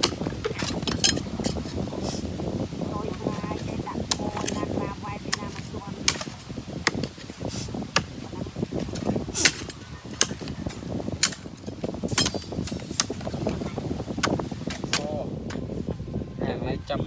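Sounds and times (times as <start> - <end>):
low background rumble: 0.0 - 17.0
hand tools knocking on brick: 3.2 - 13.6.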